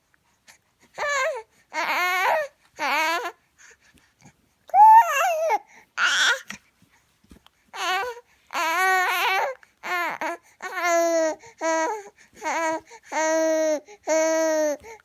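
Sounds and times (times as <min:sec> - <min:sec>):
baby vocalising: 0:04.7 - 0:06.6.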